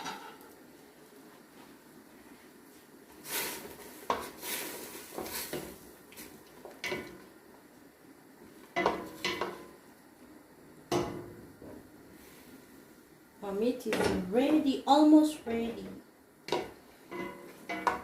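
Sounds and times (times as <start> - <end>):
metal utensils clanking on pot: 16.5 - 18.0.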